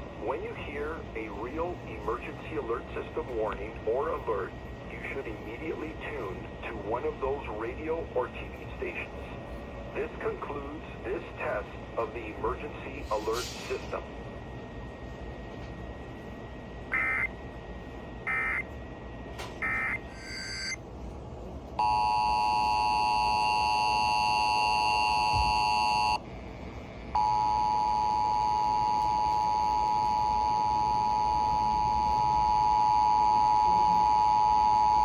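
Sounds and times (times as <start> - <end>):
digital data tone bursts: 16.9 - 17.3, 18.3 - 18.6, 19.6 - 20.8
two-tone attention signal: 16.9 - 17.3, 18.3 - 18.6, 19.6 - 20.8, 21.8 - 26.2, 27.2 - 35.0.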